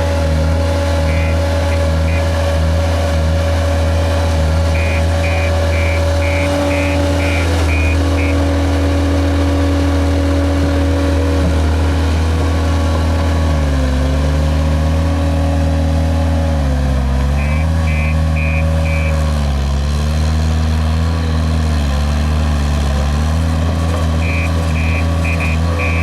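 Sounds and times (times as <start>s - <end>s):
diesel engine running: 0.0s - 26.0s
short reversing beeps: 1.0s - 2.5s, 4.7s - 8.6s, 17.4s - 19.2s, 24.2s - 26.0s.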